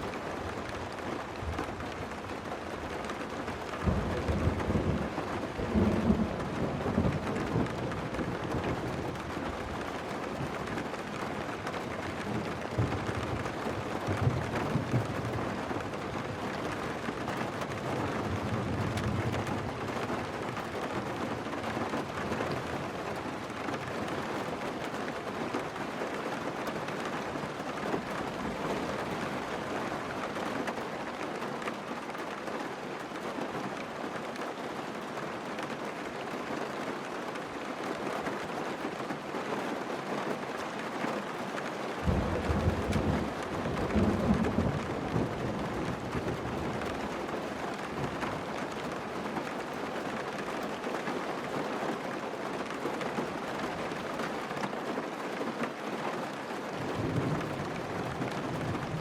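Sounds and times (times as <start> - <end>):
heavy rain on a car: 0.0 - 59.0
low thunder rumble: 42.1 - 46.9.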